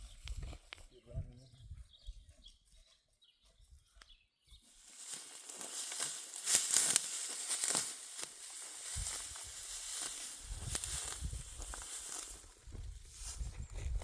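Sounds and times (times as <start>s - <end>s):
dry stalks crackling and rustling: 0.0s - 1.0s, 3.7s - 14.0s
stalks snapping and tearing: 5.5s - 8.3s.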